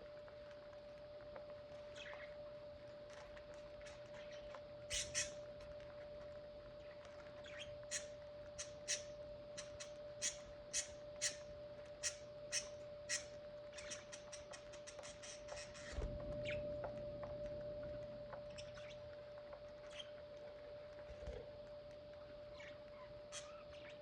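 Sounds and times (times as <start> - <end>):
budgerigars chirping: 3.8 - 5.4, 7.3 - 16.6, 18.6 - 19.0.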